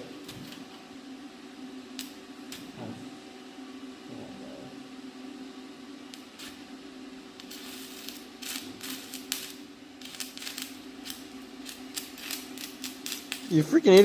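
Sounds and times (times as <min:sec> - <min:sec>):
welding arc crackling: 0:00.0 - 0:00.9, 0:01.8 - 0:02.8, 0:06.1 - 0:14.0
welder humming: 0:00.0 - 0:14.0.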